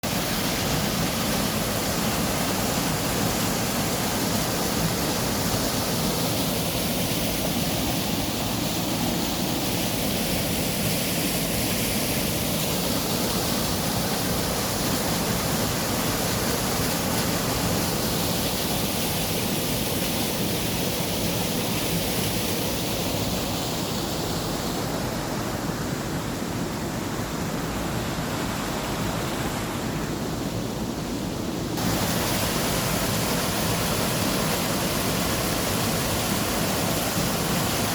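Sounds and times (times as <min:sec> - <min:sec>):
steady rushing noise: 0:22.7 - 0:37.9.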